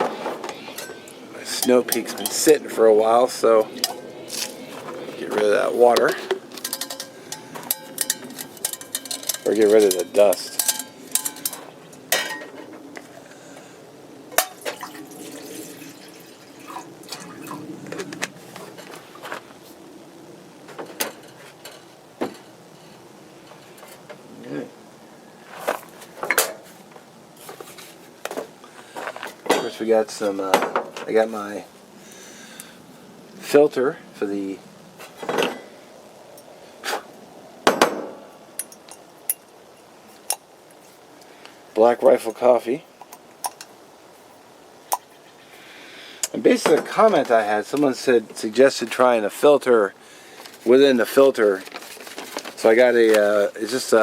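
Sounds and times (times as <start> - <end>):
metal cookware clinking: 5.9 - 12.5
liquid sounds: 14.3 - 18.1.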